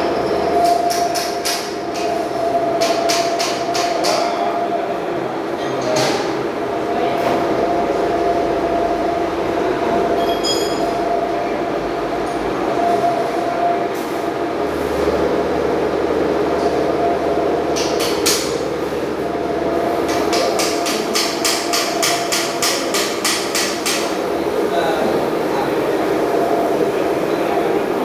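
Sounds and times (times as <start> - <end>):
machine hum: 6.5 - 28.0.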